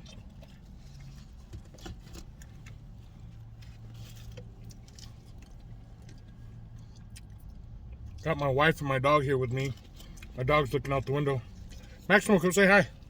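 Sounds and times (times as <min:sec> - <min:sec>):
chewing mouth noises: 0:00.0 - 0:08.2
car interior hum: 0:00.0 - 0:13.0.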